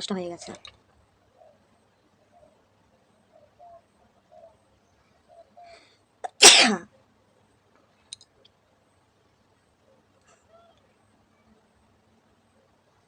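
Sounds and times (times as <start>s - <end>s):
woman sneezing: 6.3s - 6.8s.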